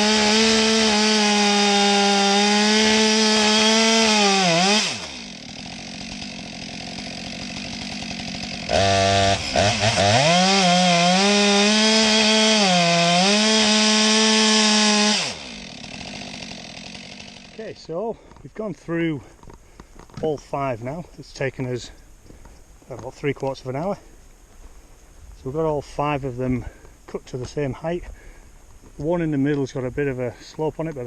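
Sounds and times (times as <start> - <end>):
chainsaw cutting wood: 0.0 - 18.4.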